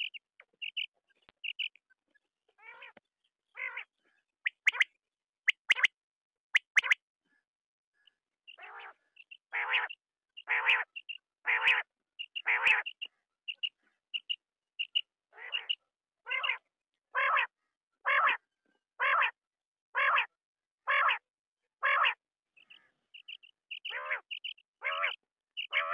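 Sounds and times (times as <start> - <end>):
quail rasping calls: 6.6 - 7.0, 8.5 - 16.6, 21.8 - 25.9.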